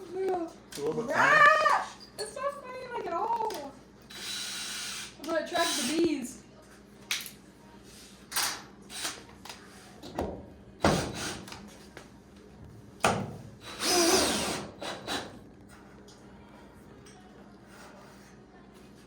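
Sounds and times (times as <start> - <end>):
power drill burst: 4.1 - 5.9, 13.6 - 15.3.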